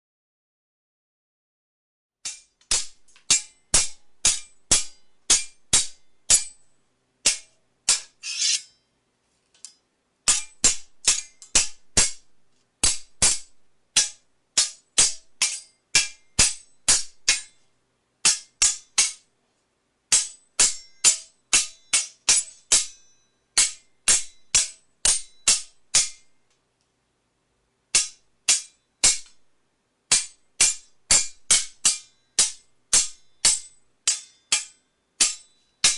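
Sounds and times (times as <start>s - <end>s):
sword blades clashing: 2.2s - 6.6s, 7.2s - 8.9s, 10.3s - 12.2s, 12.8s - 17.6s, 18.2s - 19.2s, 20.1s - 26.2s, 28.0s - 29.4s, 30.1s - 35.9s
blade scraping stroke: 8.2s - 8.8s.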